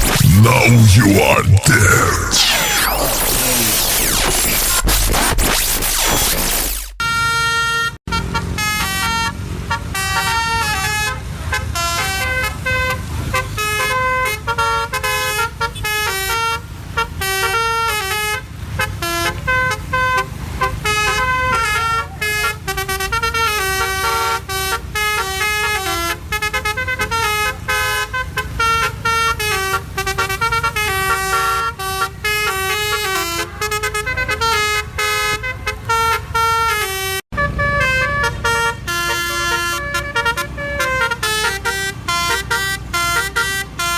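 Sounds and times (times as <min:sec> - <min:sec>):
truck air horn tune: 0:07.0 - 0:43.9.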